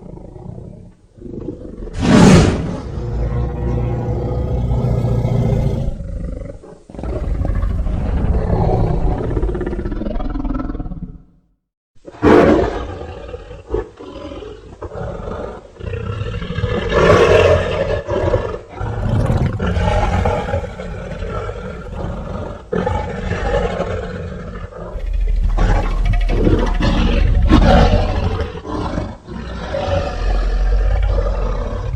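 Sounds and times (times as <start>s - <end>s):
monster roars: 6.9s - 11.2s, 24.9s - 31.9s.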